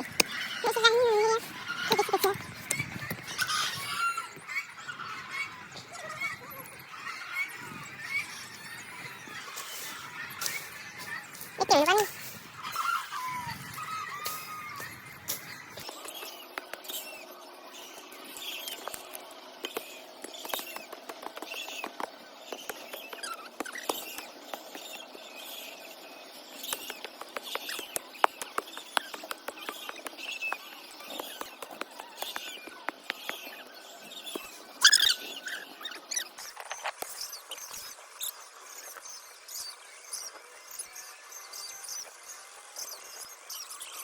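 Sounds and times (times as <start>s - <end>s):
chicks peeping: 0.0s - 16.9s
sharp clicks and scratches: 26.6s - 39.1s.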